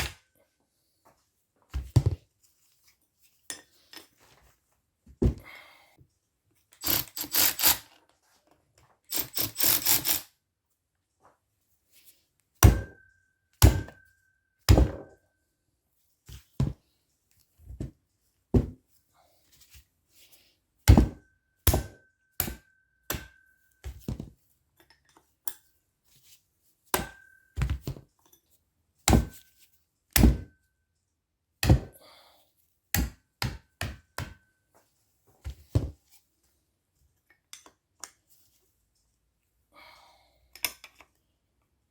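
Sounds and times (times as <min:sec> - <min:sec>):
sharp knocks with metallic ring: 0:12.6 - 0:14.1, 0:27.0 - 0:27.9.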